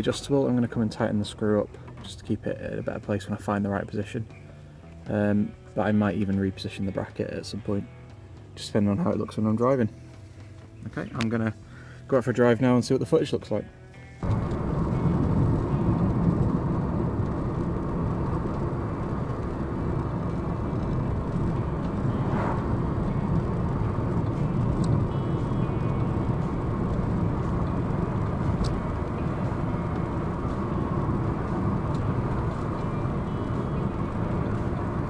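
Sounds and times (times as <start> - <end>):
road noise: 0.0 - 35.0
car engine: 14.0 - 35.0
faint light ticks: 28.5 - 28.8.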